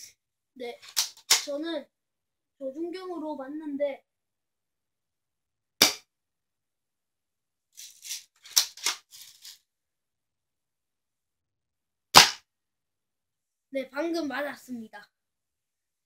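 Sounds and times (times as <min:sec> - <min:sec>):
toy shotgun snap: 0:00.9 - 0:01.5, 0:12.2 - 0:12.4.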